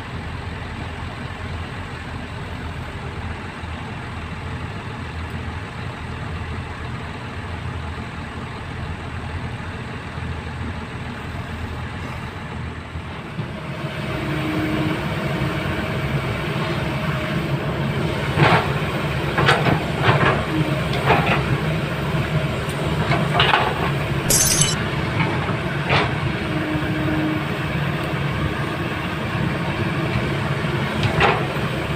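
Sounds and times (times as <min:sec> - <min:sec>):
irregular metallic clanks: 0:24.3 - 0:24.8.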